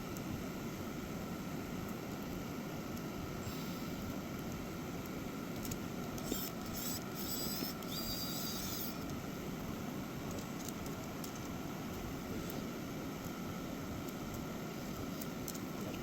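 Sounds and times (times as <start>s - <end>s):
electric screwdriver whirring: 6.2s - 9.1s.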